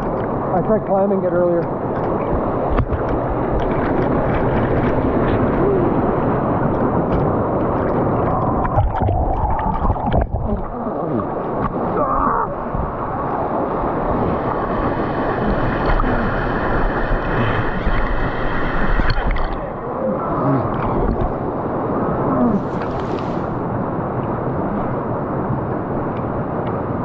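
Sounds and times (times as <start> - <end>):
water rushing and sloshing: 0.0 - 27.0
hissing splash: 22.5 - 23.9.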